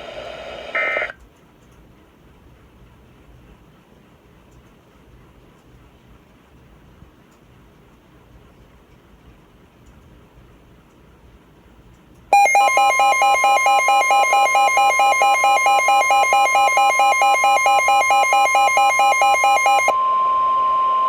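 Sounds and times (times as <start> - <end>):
steady warning tone: 12.4 - 21.0
warbling electronic alarm: 12.4 - 21.0.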